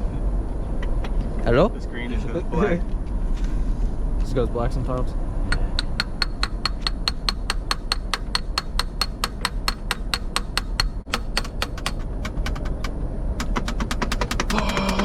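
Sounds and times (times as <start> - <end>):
rapid clicking: 5.6 - 15.0.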